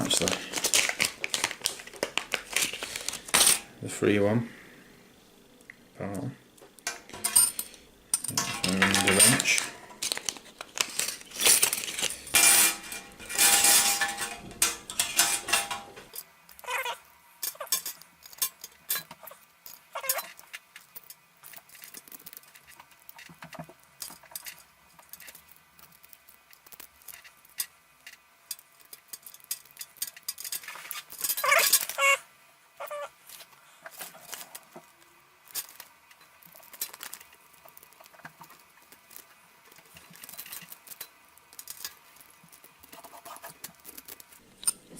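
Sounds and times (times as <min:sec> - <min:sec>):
handling noise: 0:06.9 - 0:16.2.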